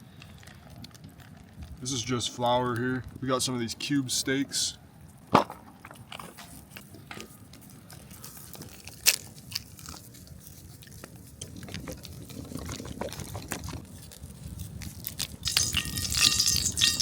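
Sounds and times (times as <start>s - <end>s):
crunchy rustling: 5.0s - 17.0s.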